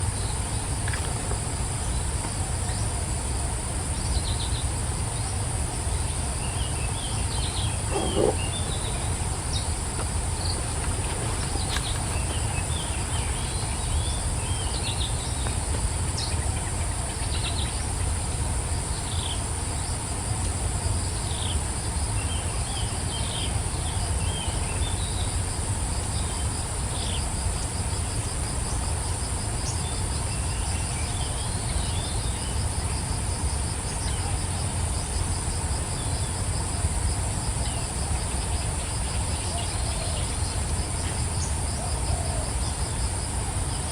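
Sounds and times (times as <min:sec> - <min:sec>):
fast pulsing insect trill: 0:00.0 - 0:43.9
low steady rumble: 0:00.0 - 0:43.9.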